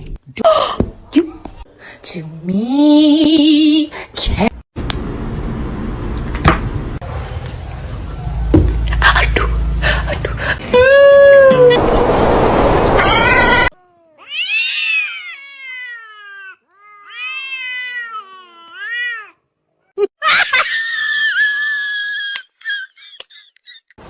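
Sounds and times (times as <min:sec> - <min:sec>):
cat yowling: 0:10.8 - 0:11.8, 0:13.0 - 0:19.4
loud burst of noise: 0:11.6 - 0:13.7.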